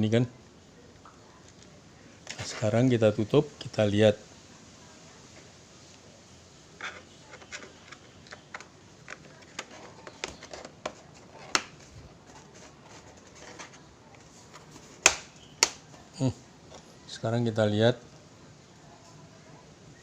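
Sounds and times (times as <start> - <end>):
hands handling plastic laptop case: 6.8 - 16.0.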